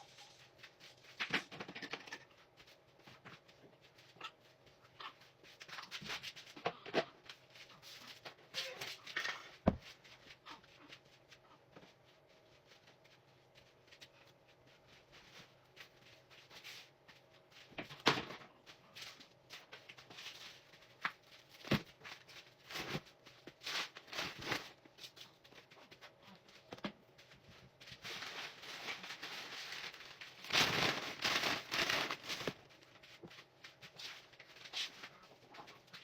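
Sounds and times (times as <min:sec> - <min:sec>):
objects knocking and clicking: 0:01.2 - 0:02.3
rustling: 0:18.6 - 0:36.0.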